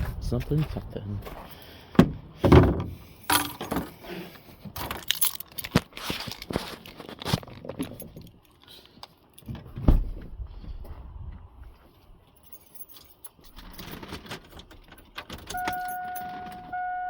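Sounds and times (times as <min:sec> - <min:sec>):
heavy thump: 0:02.0 - 0:02.9
small hard objects clinking: 0:04.8 - 0:08.5.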